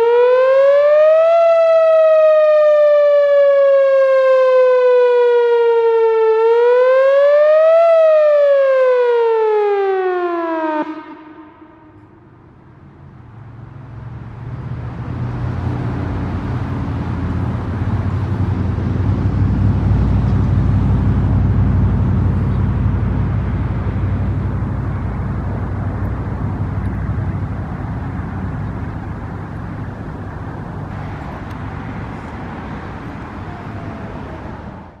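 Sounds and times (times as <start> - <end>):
siren winding down: 0.0 - 12.6, 28.4 - 34.9
vehicle engine and tyre noise: 10.0 - 35.0.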